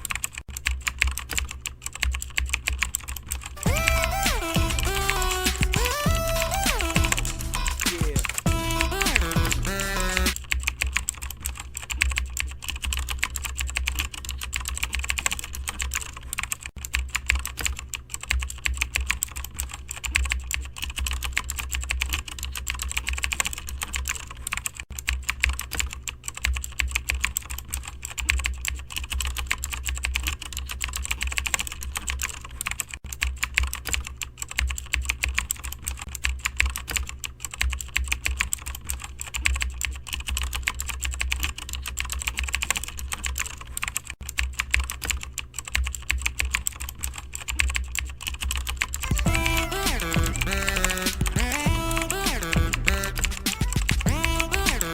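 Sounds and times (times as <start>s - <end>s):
fast typing on keyboard: 0.0s - 54.9s
low steady hum: 45.6s - 54.9s.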